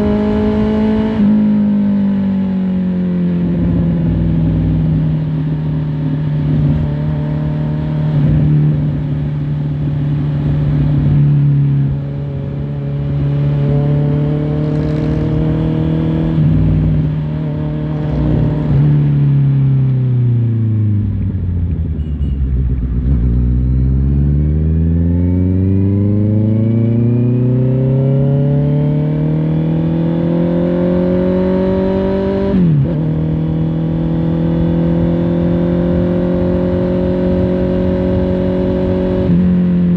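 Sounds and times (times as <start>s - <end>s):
motorcycle engine running: 2.5s - 19.6s.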